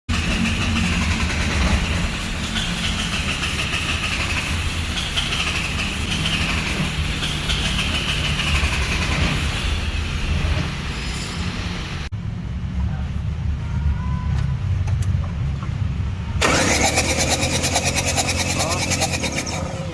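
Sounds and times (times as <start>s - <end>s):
diesel engine cranking on starter: 16.4s - 19.9s.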